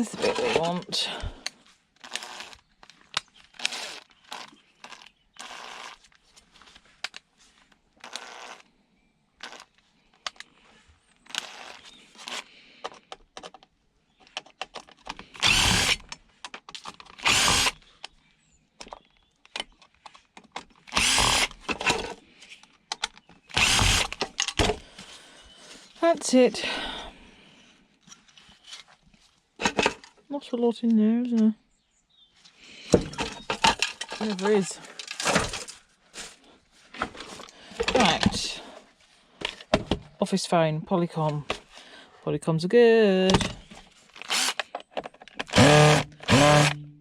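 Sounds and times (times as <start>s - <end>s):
power tool bursts: 15.4s - 16.0s, 17.2s - 17.8s, 20.9s - 22.0s, 23.5s - 24.2s, 44.2s - 44.6s, 45.4s - 46.9s.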